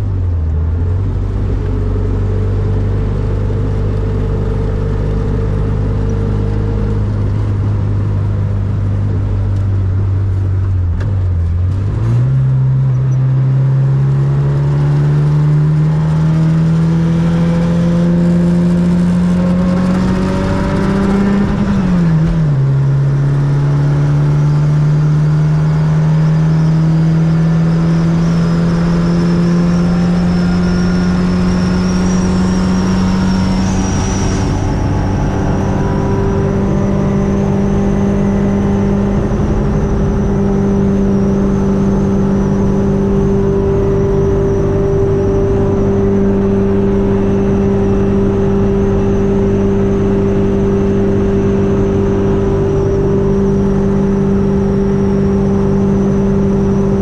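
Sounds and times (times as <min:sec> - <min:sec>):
car engine revving hard: 0:11.5 - 0:57.0.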